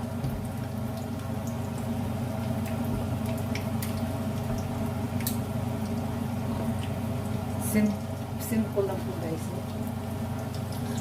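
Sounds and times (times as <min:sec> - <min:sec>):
chicken sizzling in oil: 0:00.0 - 0:11.0.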